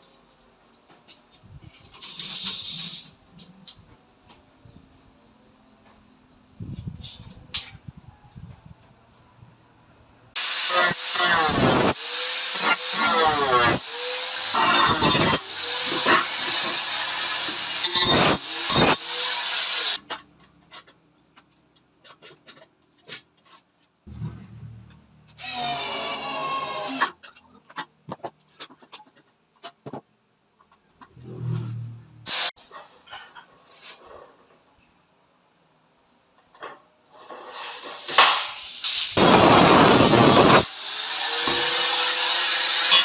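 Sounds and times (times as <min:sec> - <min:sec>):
power drill spinning: 0:10.4 - 0:20.0, 0:25.4 - 0:27.1, 0:32.3 - 0:32.6, 0:39.1 - 0:43.0.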